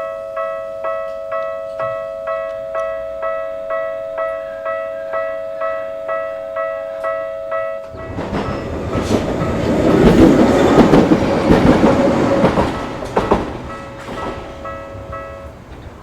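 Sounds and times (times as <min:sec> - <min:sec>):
level crossing bell ringing: 0:00.0 - 0:08.7
train wheels rumbling and clicking: 0:07.9 - 0:16.0.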